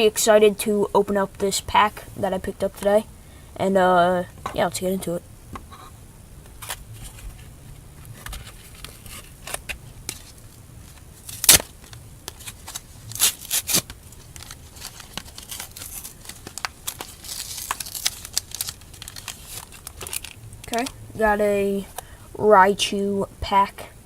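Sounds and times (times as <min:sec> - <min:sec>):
foil wrapper crinkling and tearing: 0:08.1 - 0:21.0.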